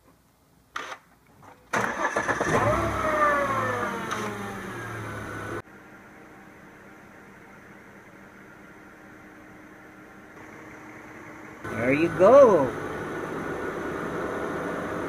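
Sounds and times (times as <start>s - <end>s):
car engine starting and idling: 1.7s - 15.0s
steady hum: 3.5s - 15.0s.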